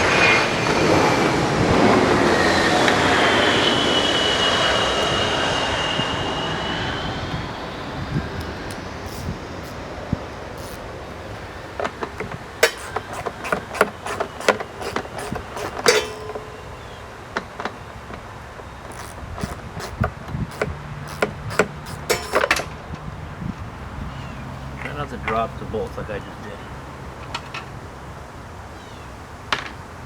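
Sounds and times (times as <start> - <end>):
bolts dropping: 7.3 - 26.2, 27.0 - 27.9
metallic clanks of hand tools: 11.8 - 17.0, 18.9 - 23.0.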